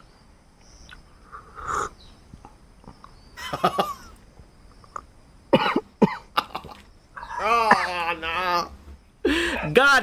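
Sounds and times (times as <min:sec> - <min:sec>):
man coughing: 0:03.4 - 0:04.2, 0:05.5 - 0:06.8, 0:07.4 - 0:08.1.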